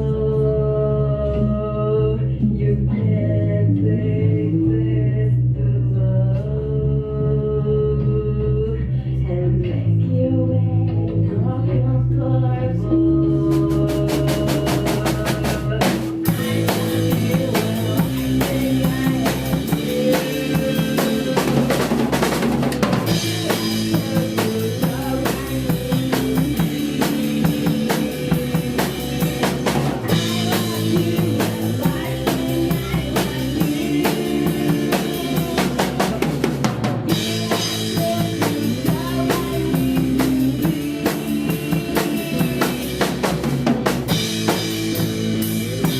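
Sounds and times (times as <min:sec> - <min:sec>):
bass and guitar: 0:00.0 - 0:45.9
drum kit beat: 0:13.5 - 0:45.9.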